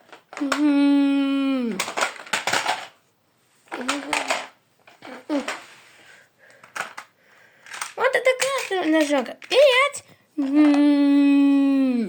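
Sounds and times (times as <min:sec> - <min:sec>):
small hard objects clattering: 0:01.7 - 0:03.0, 0:03.7 - 0:05.8, 0:06.6 - 0:09.7.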